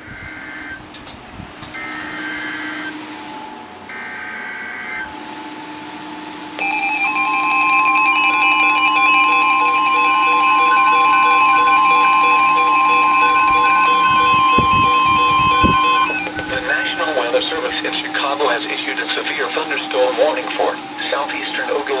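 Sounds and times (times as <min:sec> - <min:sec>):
shrill pulsing beeps: 0:06.6 - 0:22.0
steady warning tone: 0:06.6 - 0:22.0
warbling data tones: 0:06.6 - 0:22.0.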